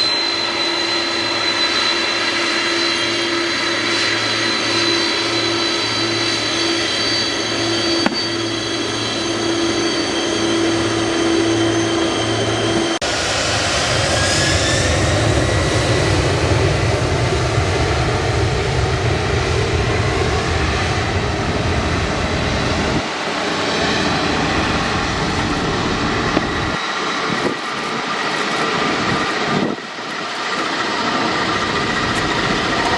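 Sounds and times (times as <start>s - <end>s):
jet engines running: 0.0s - 32.9s
high whine: 4.6s - 13.4s, 20.0s - 32.9s.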